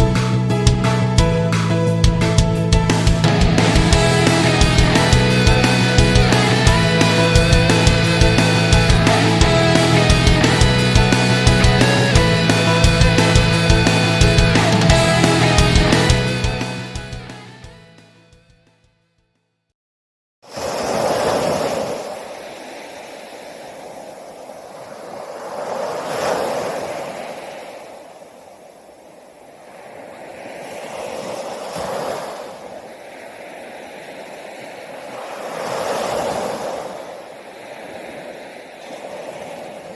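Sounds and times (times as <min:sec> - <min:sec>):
sea waves washing onto shore: 0:20.5 - 0:39.9.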